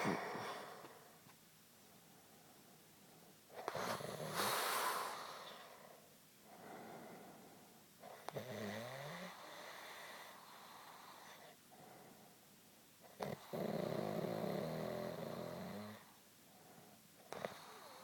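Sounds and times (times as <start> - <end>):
soft breath: 0.0 - 8.0, 9.4 - 12.5, 16.0 - 18.0
man snoring: 8.2 - 9.8, 13.2 - 16.0.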